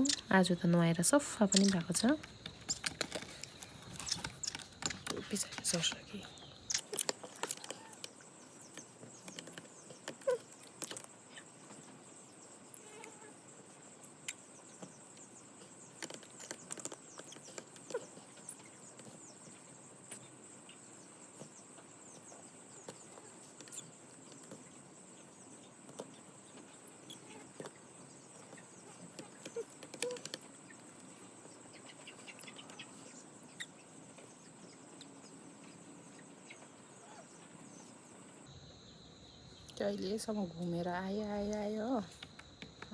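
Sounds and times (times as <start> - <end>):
light clicks and rustles: 0.0 - 12.0.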